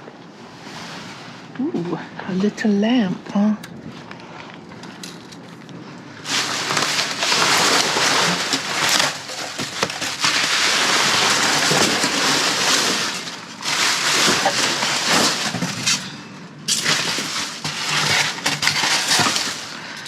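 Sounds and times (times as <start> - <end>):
plastic bags rustling and crackling: 4.7 - 20.0.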